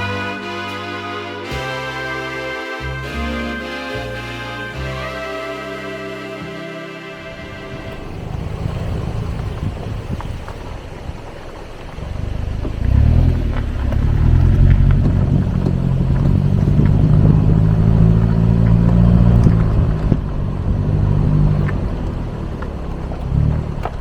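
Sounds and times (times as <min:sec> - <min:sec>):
car engine running: 0:07.2 - 0:24.0.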